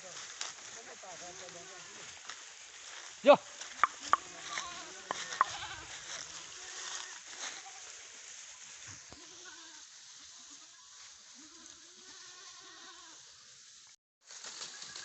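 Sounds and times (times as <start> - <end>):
steady outdoor hiss: 0.0 - 15.0
goats bleating: 3.8 - 7.9, 9.0 - 13.2.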